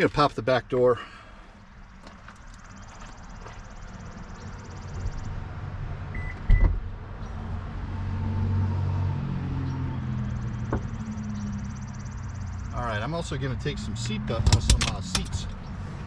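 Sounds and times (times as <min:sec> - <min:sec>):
latch clunk: 0:14.4 - 0:15.4.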